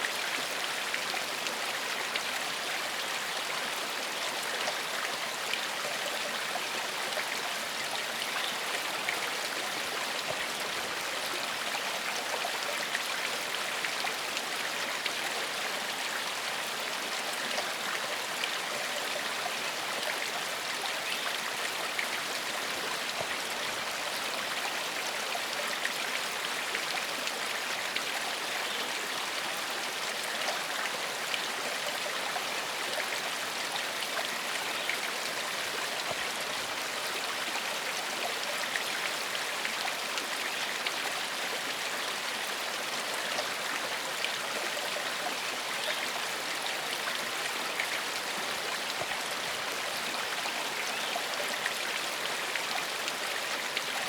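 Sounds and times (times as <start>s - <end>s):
stream flowing over stones: 0.0s - 54.0s.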